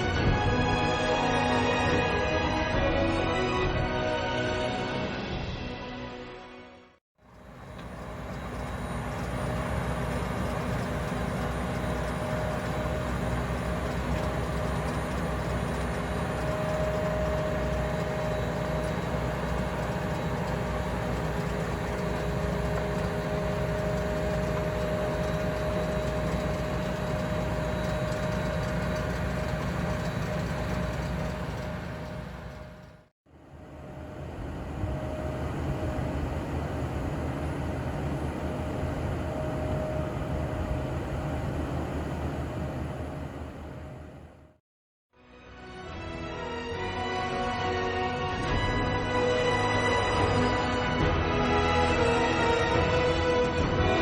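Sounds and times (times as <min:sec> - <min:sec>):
faint machinery whine: 0:07.2 - 0:44.6
tractor engine rumble: 0:07.3 - 0:33.1, 0:34.0 - 0:44.4.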